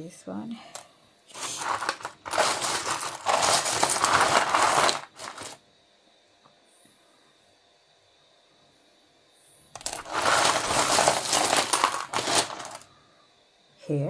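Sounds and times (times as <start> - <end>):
stones clattering and scraping: 1.3 - 5.6, 9.8 - 12.8.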